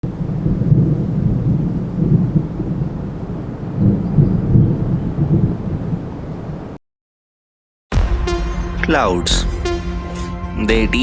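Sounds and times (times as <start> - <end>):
thunder rumbling: 0.0 - 6.8.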